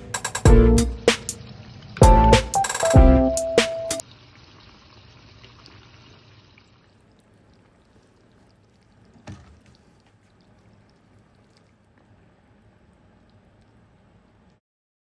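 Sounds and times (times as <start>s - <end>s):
liquid pouring: 4.0s - 14.6s.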